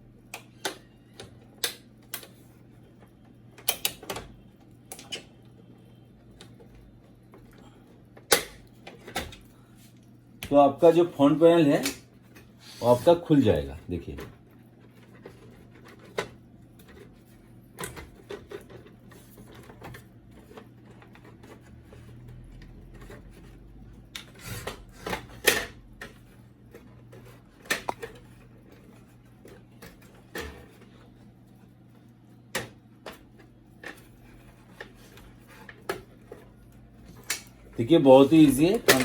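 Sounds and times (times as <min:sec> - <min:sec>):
plastic clicks and snaps: 0:01.6 - 0:02.3, 0:37.2 - 0:37.6.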